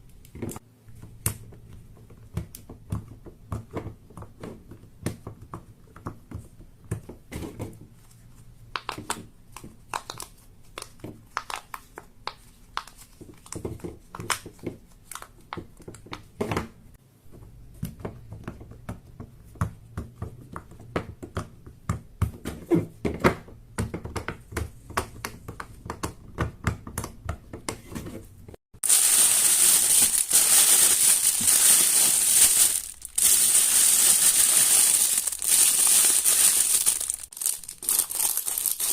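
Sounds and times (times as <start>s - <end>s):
loud continuous crinkling: 28.8s - 38.9s.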